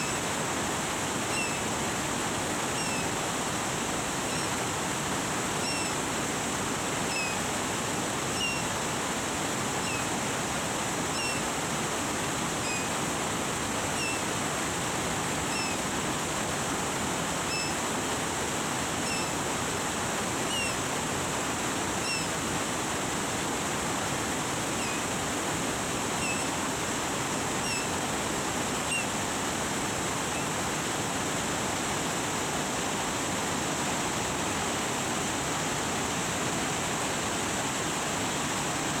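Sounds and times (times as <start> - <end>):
faint high chirps: 0.0 - 0.3, 1.3 - 1.7, 2.7 - 3.1, 4.3 - 4.6, 5.6 - 6.0, 7.1 - 7.5, 8.3 - 8.7, 9.8 - 10.1, 11.1 - 11.5, 12.6 - 13.0, 13.9 - 14.3, 15.4 - 15.9, 17.4 - 17.8, 19.0 - 19.3, 20.5 - 20.8, 22.0 - 22.4, 24.8 - 25.1, 26.2 - 26.6, 27.6 - 27.9, 28.9 - 29.1
waterfall rushing: 0.0 - 39.0.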